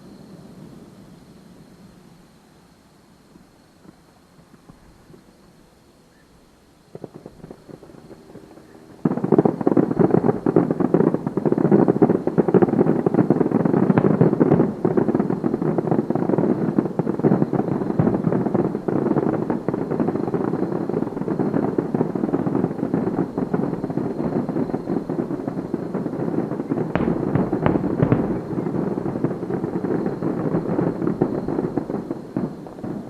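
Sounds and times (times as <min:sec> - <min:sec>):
fireworks bangs and crackles: 0:06.8 - 0:33.0.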